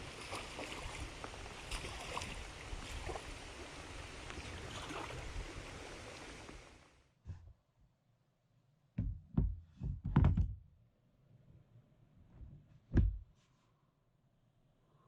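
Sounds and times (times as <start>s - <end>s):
hard knocks and thumps: 9.0s - 10.6s, 12.9s - 13.3s.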